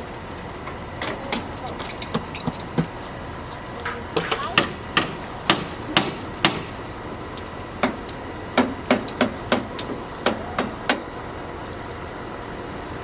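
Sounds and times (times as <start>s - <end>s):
hammer blows: 3.9s - 6.8s.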